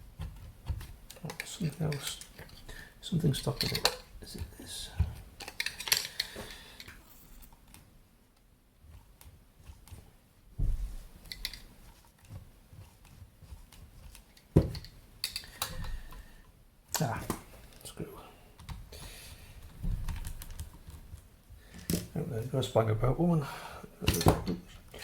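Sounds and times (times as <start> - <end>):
small parts and tools clicking: 0.3 - 4.5, 5.4 - 7.8, 11.2 - 12.4, 13.7 - 16.2, 20.0 - 22.1
dull thump: 10.6 - 11.1.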